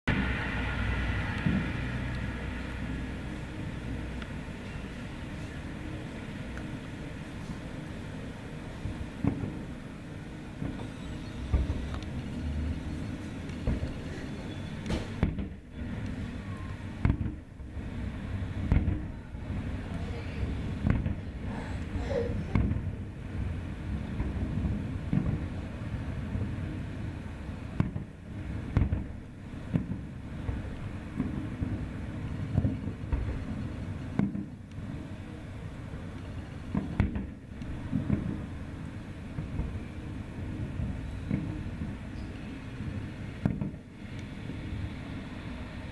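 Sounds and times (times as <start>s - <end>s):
low rumble: 0.0s - 43.4s
fireworks booming: 0.1s - 45.9s.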